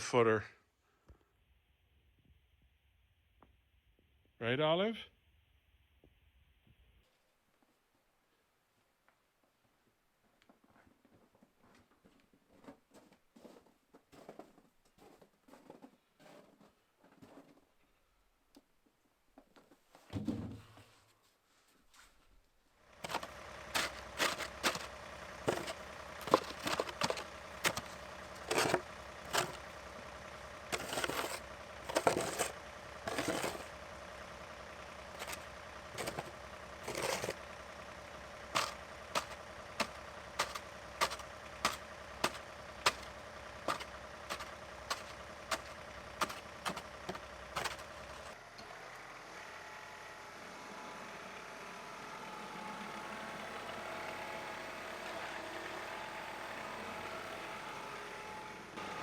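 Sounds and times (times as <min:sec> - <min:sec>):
engine running steadily: 0:22.9 - 0:59.0
sharp clanks and knocks: 0:23.0 - 0:29.7, 0:30.7 - 0:33.7, 0:35.2 - 0:37.4, 0:38.6 - 0:48.4.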